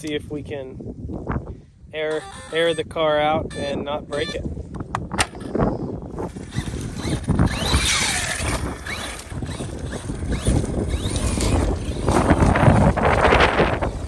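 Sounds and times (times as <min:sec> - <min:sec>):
rc car motor whine: 0:05.4 - 0:14.0
tyres rumbling on ground: 0:06.2 - 0:14.0.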